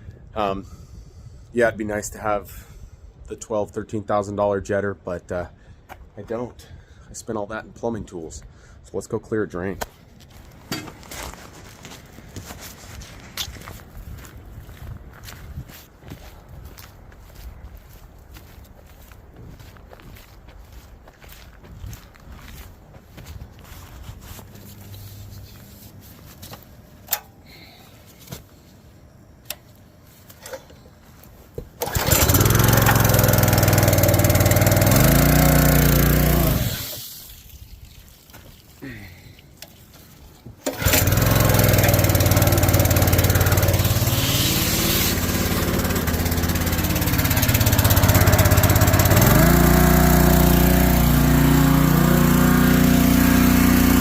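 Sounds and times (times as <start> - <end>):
small gasoline engine running: 31.8 - 37.0, 40.6 - 54.0.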